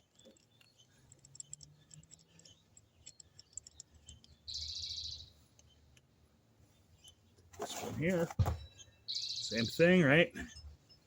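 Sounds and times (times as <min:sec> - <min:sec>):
screw tightening clicks and taps: 0:00.0 - 0:04.5
high bird trill: 0:01.8 - 0:05.8, 0:08.6 - 0:11.0.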